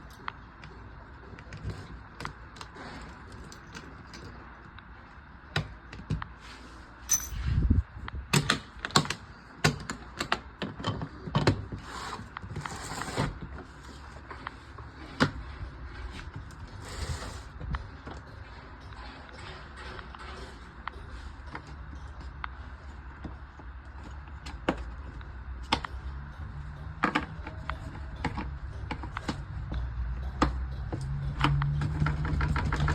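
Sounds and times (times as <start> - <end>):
tools clicking and rattling: 7.1 - 7.5.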